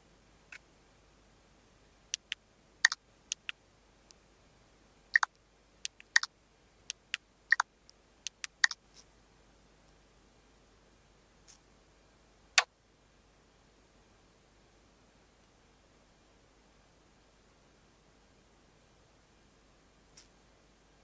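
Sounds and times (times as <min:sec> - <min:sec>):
sharp clicks: 0:05.2 - 0:06.3, 0:06.9 - 0:08.8.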